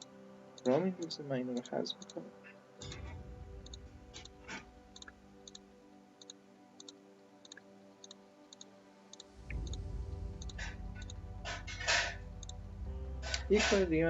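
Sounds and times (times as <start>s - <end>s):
faint music with ticking beat: 0.0s - 14.0s
low rumble: 2.8s - 5.2s, 9.4s - 14.0s
steady drone: 2.8s - 5.6s, 9.3s - 14.0s.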